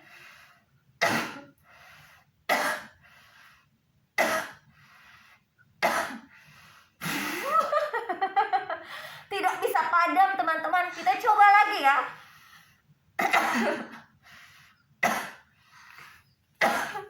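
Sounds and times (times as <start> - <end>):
woman coughing: 5.8 - 6.3, 13.2 - 14.1, 15.0 - 15.4, 16.6 - 17.0
woman speaking: 9.2 - 12.2.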